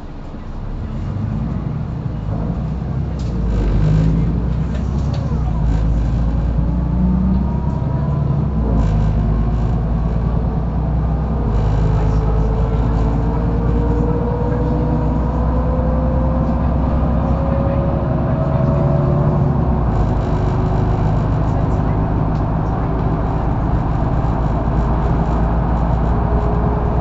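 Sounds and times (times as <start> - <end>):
bus engine and road rumble: 0.0 - 27.0.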